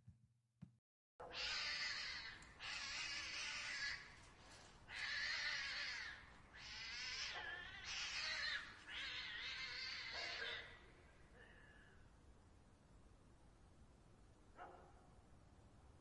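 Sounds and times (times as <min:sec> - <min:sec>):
cats yowling in a fight: 0:01.2 - 0:04.2, 0:04.9 - 0:10.9.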